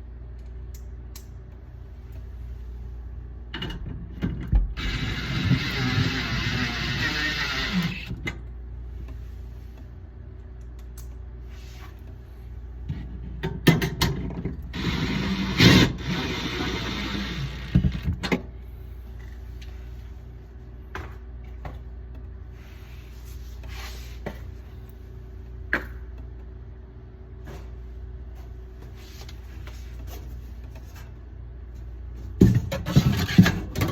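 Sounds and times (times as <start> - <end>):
steady low hum: 0.0 - 33.7.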